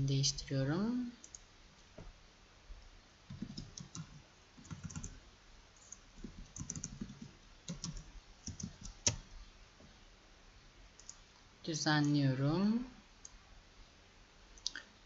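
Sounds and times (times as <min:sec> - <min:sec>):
typing on computer keyboard: 0:03.3 - 0:05.2, 0:05.8 - 0:09.2.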